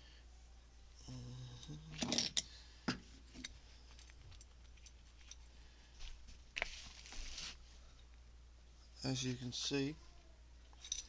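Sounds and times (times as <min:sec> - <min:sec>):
metal parts scraping: 0:10.7 - 0:11.0.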